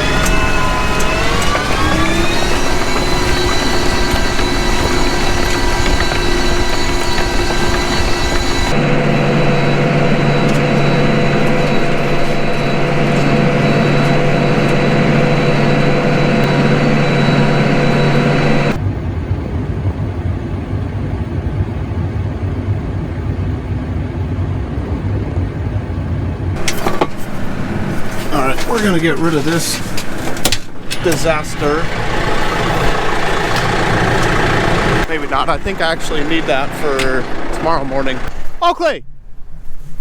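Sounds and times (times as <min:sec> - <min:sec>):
tractor diesel engine running: 0:00.0 - 0:18.8, 0:26.6 - 0:39.0.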